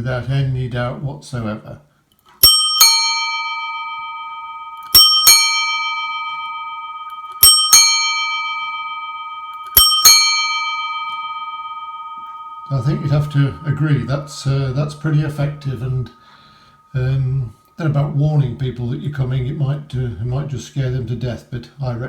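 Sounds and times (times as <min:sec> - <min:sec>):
metal bicycle bell ringing: 0:02.4 - 0:17.7.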